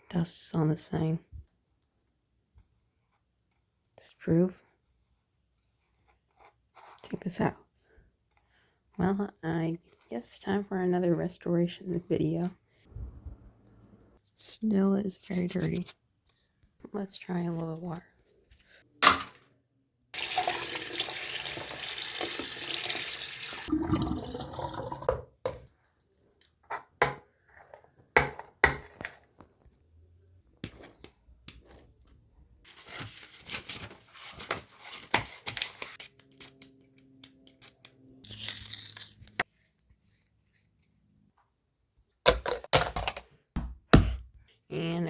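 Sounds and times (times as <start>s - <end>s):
phone being handled and wiped: 13.0s - 16.4s, 39.4s - 41.0s
water tap running: 20.2s - 25.1s.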